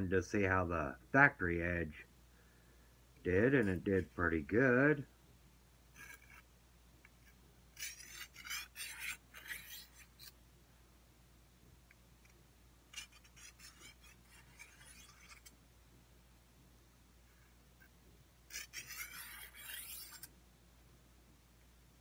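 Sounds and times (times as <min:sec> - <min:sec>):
sharpening stone scraping blade: 0:06.0 - 0:06.4, 0:07.2 - 0:10.4, 0:12.9 - 0:15.5, 0:18.5 - 0:20.3.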